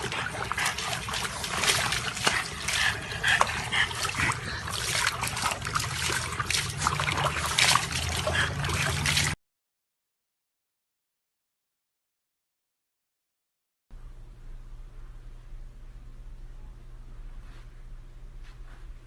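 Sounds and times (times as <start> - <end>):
water splashing and trickling: 0.0 - 9.4.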